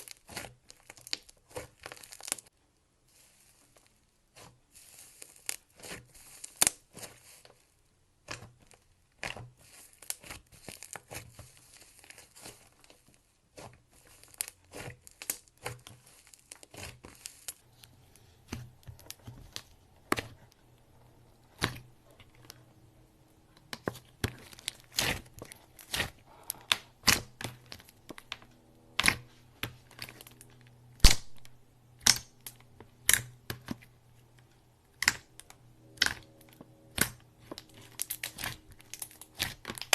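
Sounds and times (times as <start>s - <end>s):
slime squished by hand: 8.2s - 17.7s, 18.4s - 28.4s, 29.0s - 33.9s, 34.9s - 39.9s.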